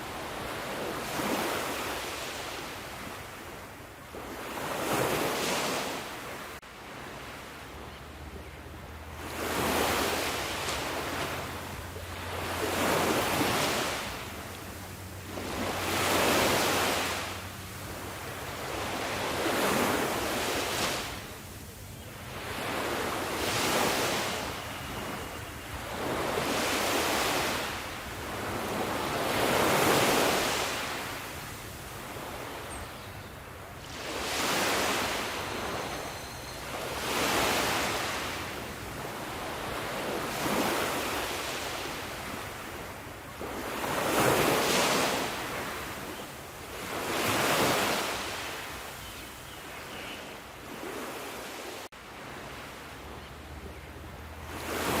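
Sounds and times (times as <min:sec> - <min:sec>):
ocean waves breaking: 0:00.0 - 0:49.0, 0:50.6 - 0:55.0.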